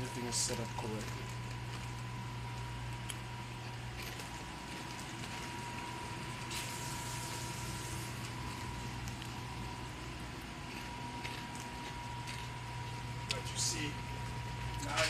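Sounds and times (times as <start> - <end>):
machine low hum: 0.0 - 15.0.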